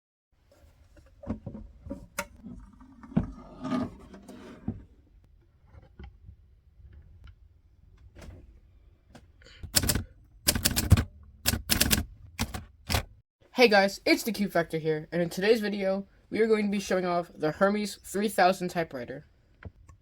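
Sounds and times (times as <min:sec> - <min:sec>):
manual typewriter clatter: 0:09.7 - 0:13.1.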